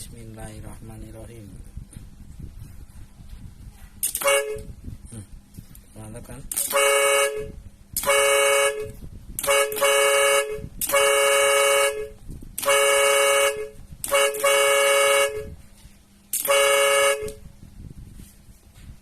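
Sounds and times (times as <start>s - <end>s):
two-tone air horn blasts: 4.0s - 4.8s, 6.5s - 15.6s, 16.3s - 17.5s.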